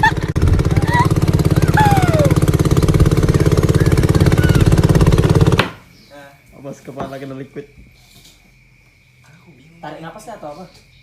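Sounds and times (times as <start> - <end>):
engine running with pulsing beat: 0.0 - 5.8.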